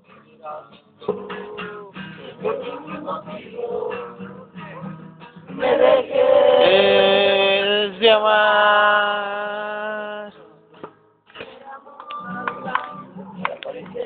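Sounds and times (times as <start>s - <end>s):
plucked guitar: 0.0s - 14.0s.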